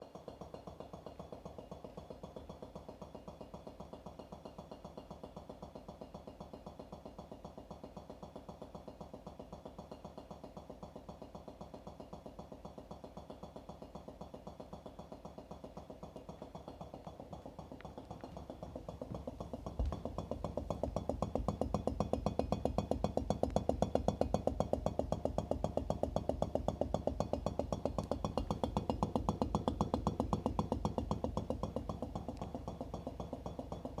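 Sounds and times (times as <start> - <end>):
refrigerator knocking rapidly: 15.3 - 34.0.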